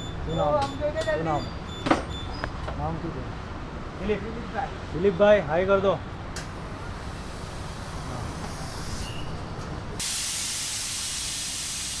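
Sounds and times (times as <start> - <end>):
compressed air hissing: 6.7 - 9.4, 10.0 - 12.0.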